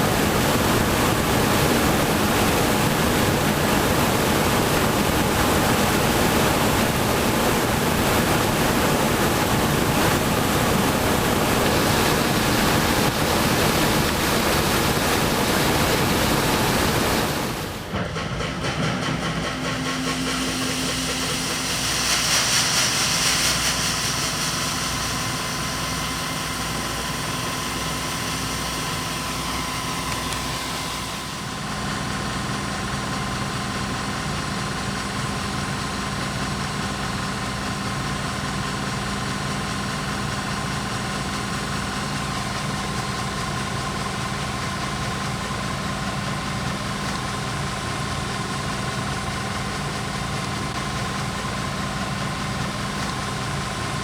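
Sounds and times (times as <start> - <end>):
loud rushing noise: 0.0 - 17.9
diesel engine running: 0.0 - 54.0.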